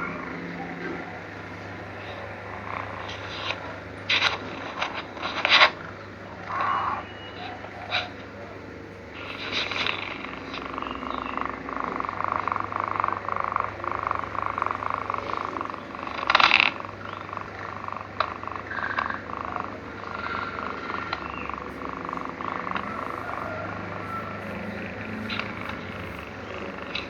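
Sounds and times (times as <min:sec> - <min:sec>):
cat snoring and purring: 0:09.2 - 0:27.0.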